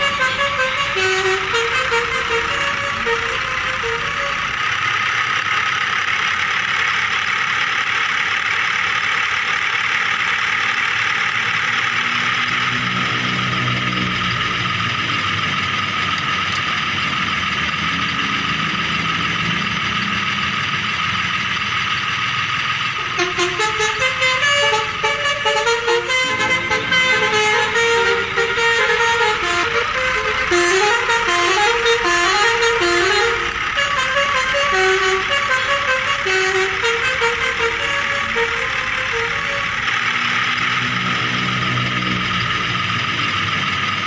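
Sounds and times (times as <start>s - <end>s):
steady horn-like tone: 23.0s - 42.4s.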